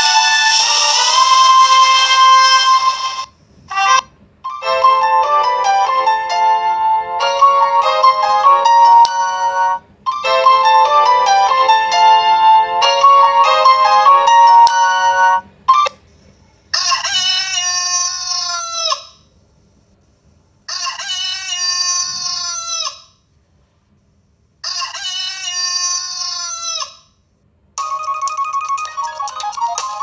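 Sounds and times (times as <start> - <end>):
rooster crowing ringtone: 0.0 - 3.3, 4.5 - 15.4, 27.8 - 30.0
musical ringtone melody: 0.0 - 15.5, 27.8 - 30.0
electronic ringtone: 0.0 - 15.9, 27.8 - 30.0.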